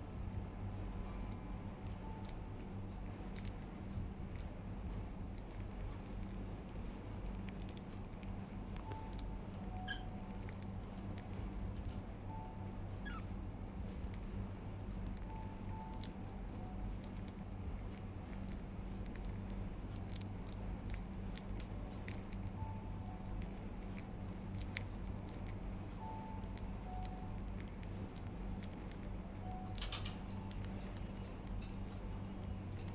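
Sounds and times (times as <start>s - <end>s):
budgies nibbling lettuce: 0.0s - 32.9s
steady low hum: 0.0s - 32.9s.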